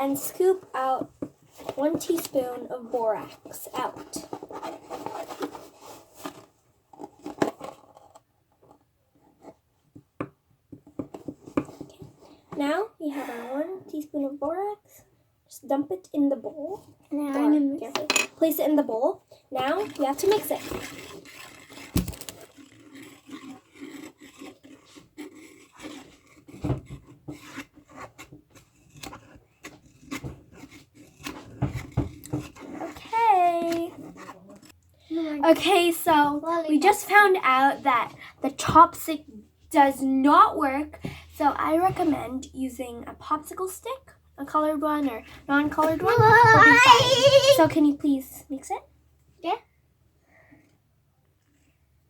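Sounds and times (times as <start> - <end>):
teaspoon scraping powder: 19.6 - 31.6
faint taps: 45.7 - 47.8.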